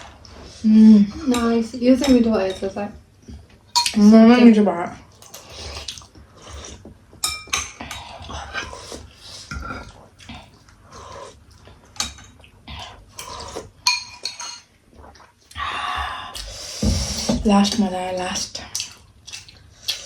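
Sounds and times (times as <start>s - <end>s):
dishes and cutlery clinking: 1.2s - 2.8s, 7.2s - 8.8s, 9.5s - 10.0s, 12.0s - 12.4s, 13.2s - 14.7s.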